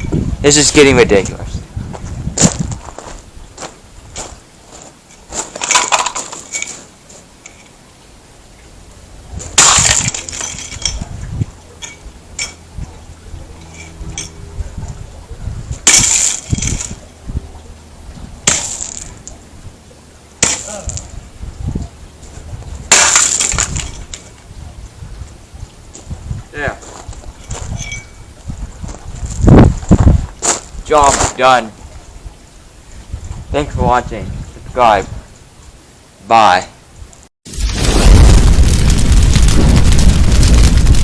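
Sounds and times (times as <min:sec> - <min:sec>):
clock breaking apart: 0:09.6 - 0:10.9, 0:15.8 - 0:17.0, 0:18.4 - 0:19.2, 0:22.9 - 0:24.2, 0:37.5 - 0:41.0.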